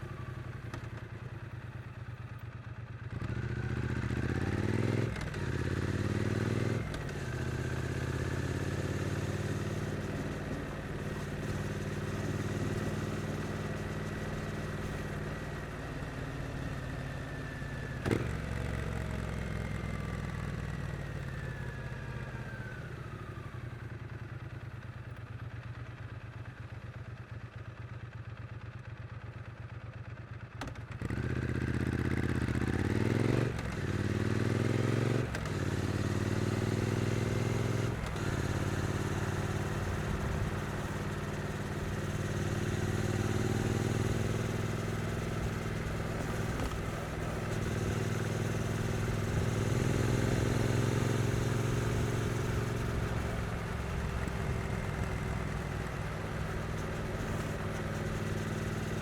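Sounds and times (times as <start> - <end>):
motorcycle engine: 0.0 - 26.6, 27.5 - 59.0.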